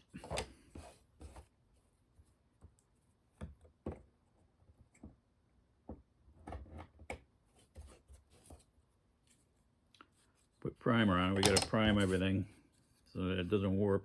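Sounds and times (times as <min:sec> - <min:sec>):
small objects clicking on workbench: 0:11.4 - 0:11.8.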